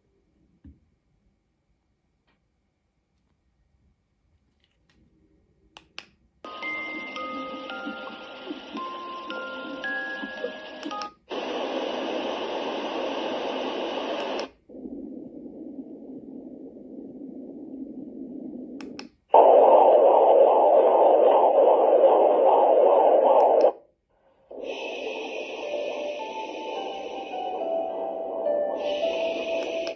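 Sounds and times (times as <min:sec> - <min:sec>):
white noise machine hiss: 0:06.4 - 0:23.7, 0:24.5 - 0:29.9.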